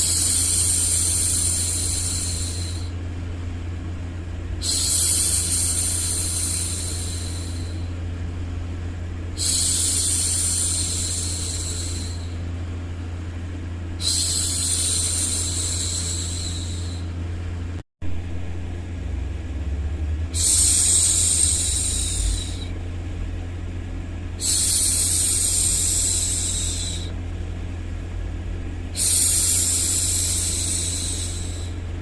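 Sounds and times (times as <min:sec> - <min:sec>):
steady low hum: 0:00.0 - 0:32.0
woman shushing: 0:14.0 - 0:17.1, 0:20.4 - 0:22.8, 0:24.4 - 0:27.2.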